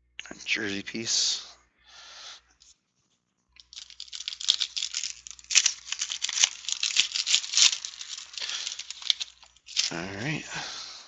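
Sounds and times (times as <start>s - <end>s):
foil wrapper tearing and crinkling: 3.6s - 10.1s.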